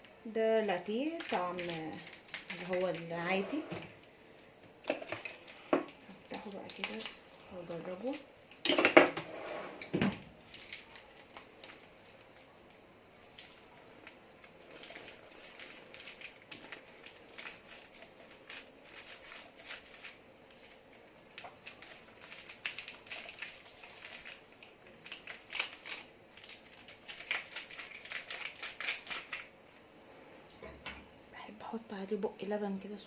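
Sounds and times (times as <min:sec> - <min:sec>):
coffee packet crinkling: 0:00.7 - 0:03.4, 0:04.9 - 0:08.8, 0:10.4 - 0:29.5.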